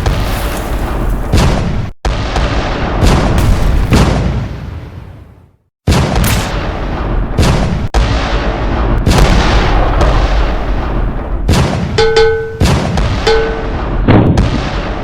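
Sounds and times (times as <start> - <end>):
naval guns and explosions: 0.0 - 15.0
short steady tone: 12.0 - 12.7, 13.3 - 13.8.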